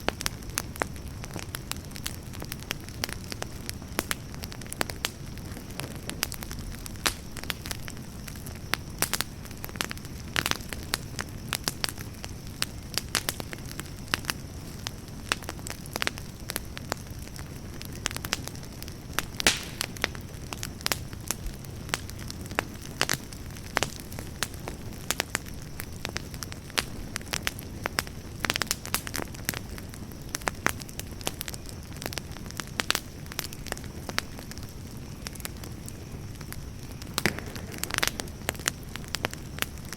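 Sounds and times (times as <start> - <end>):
campfire crackling and popping: 0.0 - 39.9.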